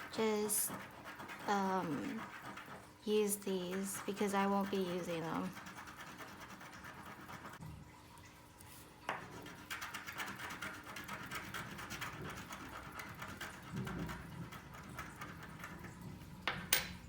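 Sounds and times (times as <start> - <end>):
scratch cards being scratched: 0.0 - 2.9, 3.5 - 7.6, 9.2 - 15.7.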